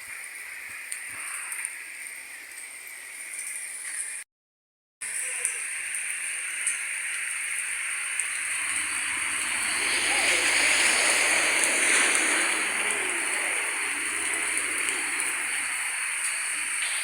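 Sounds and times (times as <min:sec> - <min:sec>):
heavy rain pouring: 0:05.0 - 0:17.0.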